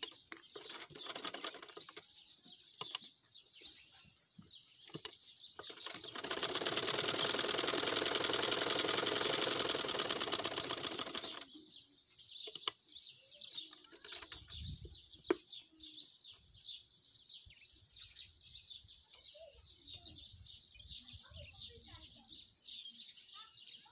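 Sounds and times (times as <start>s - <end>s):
sewing machine running: 0.6s - 1.9s, 5.6s - 11.5s.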